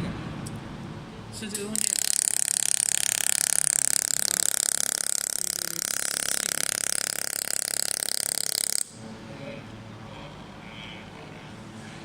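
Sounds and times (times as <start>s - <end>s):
laser welding hiss: 1.6s - 8.9s.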